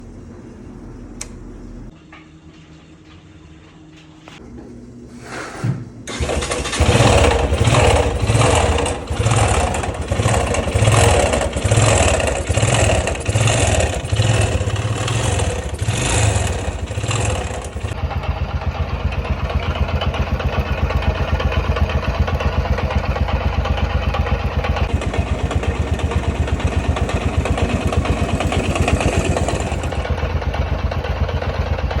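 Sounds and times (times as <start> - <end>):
motorcycle engine starting and idling: 6.1 - 32.0.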